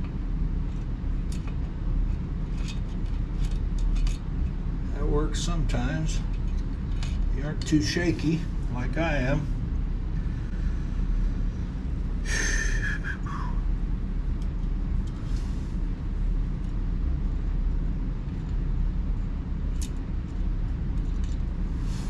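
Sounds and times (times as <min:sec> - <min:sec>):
low background rumble: 0:00.0 - 0:22.0
breathy gasp: 0:12.3 - 0:13.6.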